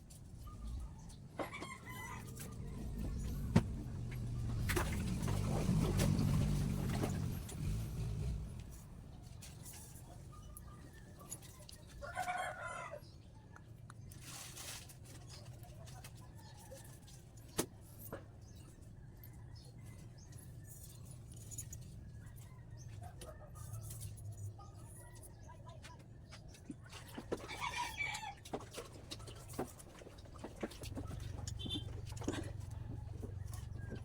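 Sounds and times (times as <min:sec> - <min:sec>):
rooster crowing: 0:12.0 - 0:13.0.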